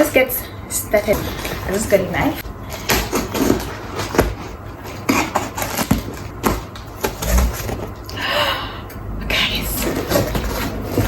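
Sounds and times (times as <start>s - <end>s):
knife cutting package: 2.7s - 7.9s.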